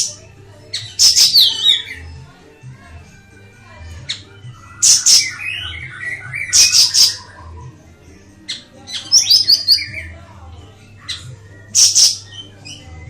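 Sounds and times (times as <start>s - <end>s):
songbird harsh rasping calls: 0.7s - 2.2s, 4.0s - 7.6s, 8.5s - 10.1s, 11.1s - 12.8s.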